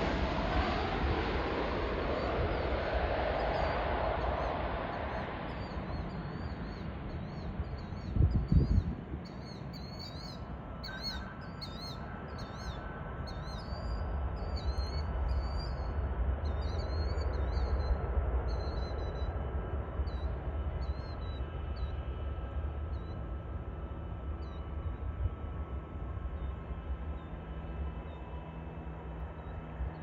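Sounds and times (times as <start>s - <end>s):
distant jet airliner: 0.0s - 30.0s
small bird chirping: 5.6s - 15.8s.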